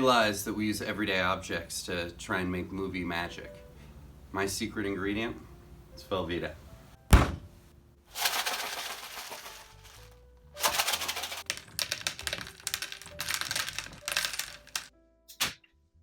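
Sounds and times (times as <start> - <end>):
faint background music: 0.0 - 16.0
sharp knock: 7.1 - 7.5.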